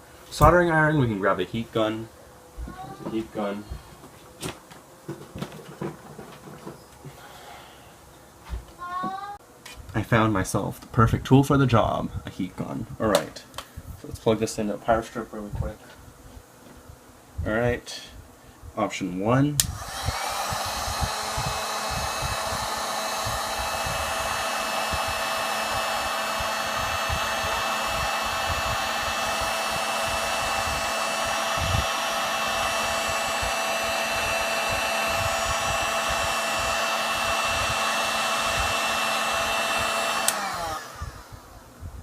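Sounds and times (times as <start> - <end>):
heat gun blowing with whine: 11.8 - 42.0
switch click: 19.6 - 19.8.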